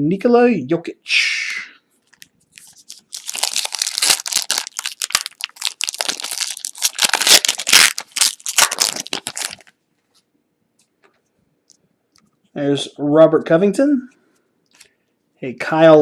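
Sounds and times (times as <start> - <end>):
foil wrapper crinkling: 2.1 - 9.8.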